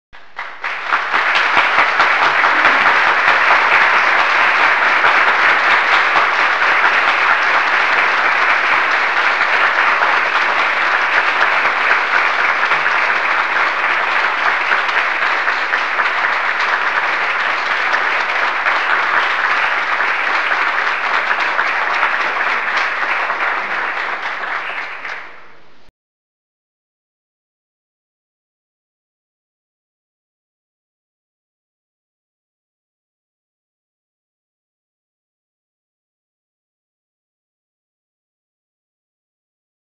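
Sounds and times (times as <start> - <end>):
large crowd applauding: 0.2 - 25.6.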